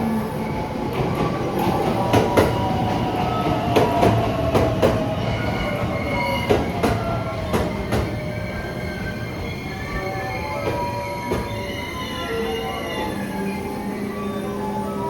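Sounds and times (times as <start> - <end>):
train rumble: 0.0 - 15.0
train wheels knocking over rail joints: 1.2 - 8.3.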